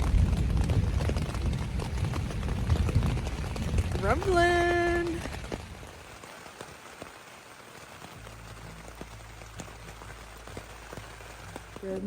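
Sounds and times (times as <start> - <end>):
raindrops ticking: 0.0 - 12.0
steady rain: 0.0 - 12.0
low steady rumble: 8.2 - 12.0.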